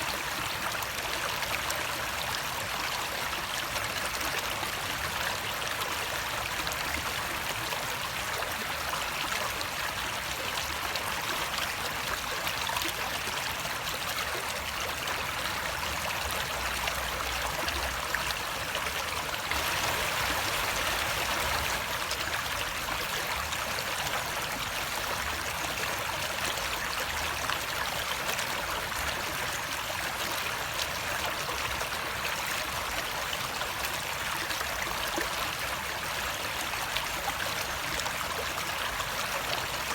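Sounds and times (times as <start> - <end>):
running water flowing: 9.6 - 29.6.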